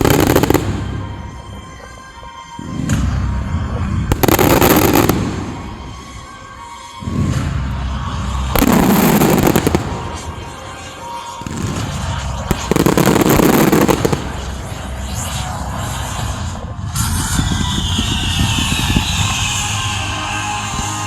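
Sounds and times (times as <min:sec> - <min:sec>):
fireworks banging and crackling: 0:00.0 - 0:16.7.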